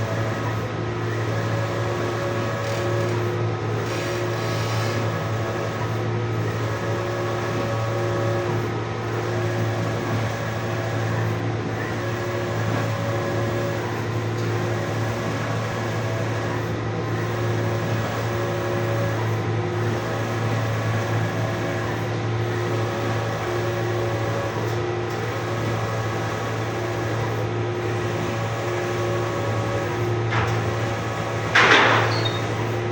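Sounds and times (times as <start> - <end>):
printing machine humming and whirring: 0.0 - 32.9.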